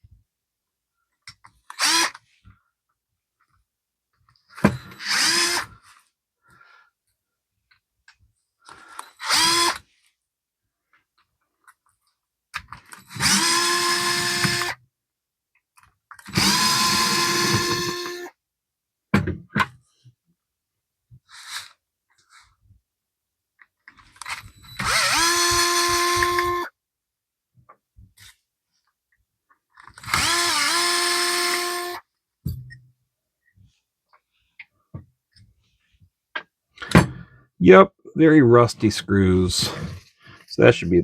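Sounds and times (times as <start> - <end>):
powered screwdriver running: 1.7 - 2.2, 5.0 - 5.7, 9.2 - 9.8, 13.0 - 14.8, 16.2 - 18.3, 24.2 - 26.7, 29.9 - 32.0.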